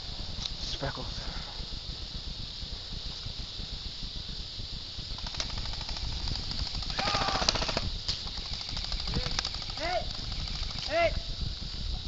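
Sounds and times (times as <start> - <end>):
steady high hiss: 0.0 - 12.0
airsoft guns firing bursts: 5.2 - 11.2.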